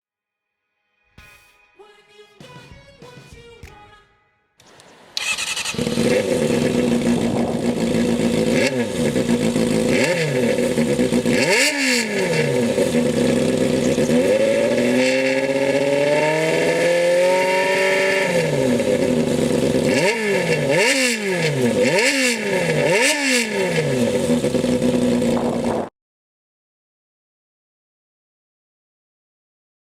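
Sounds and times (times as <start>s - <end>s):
motorcycle engine revving: 4.6s - 25.9s.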